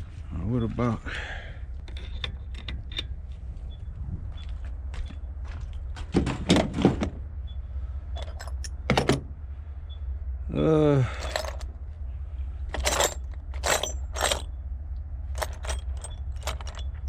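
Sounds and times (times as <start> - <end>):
scrap metal clattering: 11.2 - 11.7, 12.7 - 14.5, 15.4 - 17.0.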